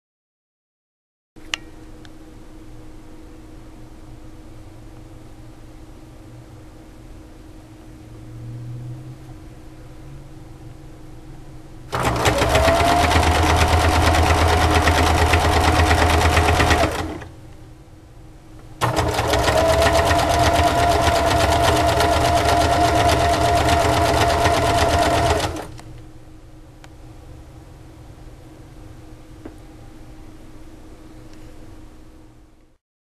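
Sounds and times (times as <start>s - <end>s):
sewing machine motor whine: 11.9s - 17.3s, 18.8s - 25.8s.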